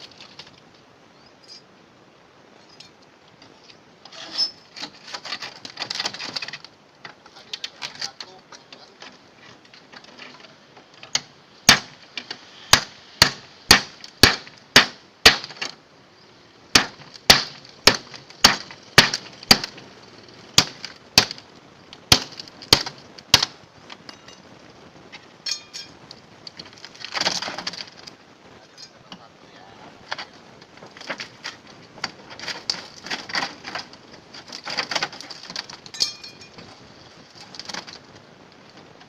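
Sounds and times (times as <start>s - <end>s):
metal scraping clatter: 2.7s - 6.7s
machete chopping metal: 11.7s - 12.0s, 12.7s - 15.7s, 16.8s - 19.8s.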